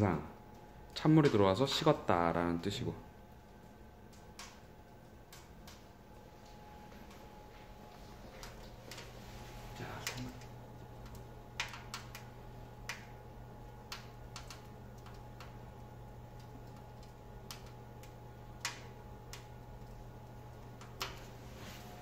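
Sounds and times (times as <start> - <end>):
steady low hum: 0.0 - 22.0
wood fire crackling: 0.0 - 22.0.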